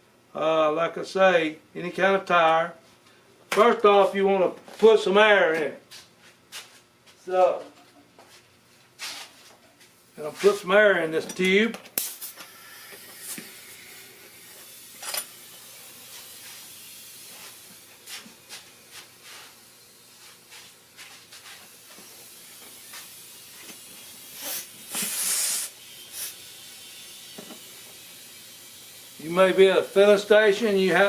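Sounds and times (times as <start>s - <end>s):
compressed air hissing: 11.9s - 31.0s.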